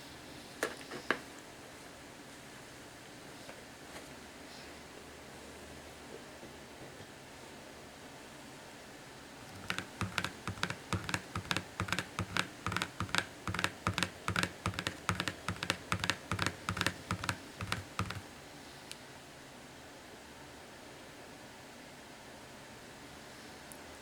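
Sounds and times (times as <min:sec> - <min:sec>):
rapid light clicks: 0:09.5 - 0:18.3.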